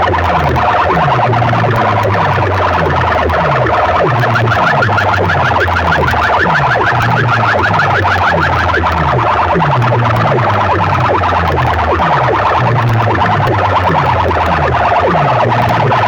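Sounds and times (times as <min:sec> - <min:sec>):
electronic siren-like alarm effect: 0:00.0 - 0:16.0
heavy bass sweeping downward: 0:00.0 - 0:16.0.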